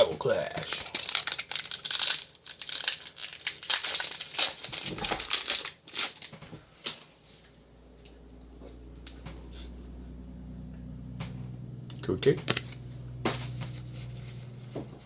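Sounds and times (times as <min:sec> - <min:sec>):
foil wrapper crinkling and tearing: 0:00.2 - 0:07.1.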